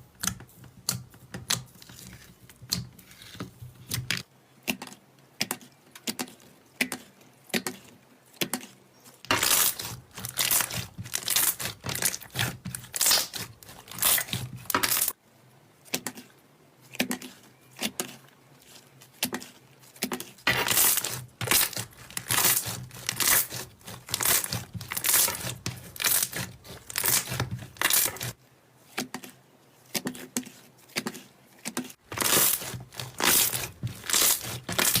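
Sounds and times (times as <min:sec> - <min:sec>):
slime crackling and popping: 0:09.3 - 0:15.2, 0:20.5 - 0:28.4, 0:32.0 - 0:35.0.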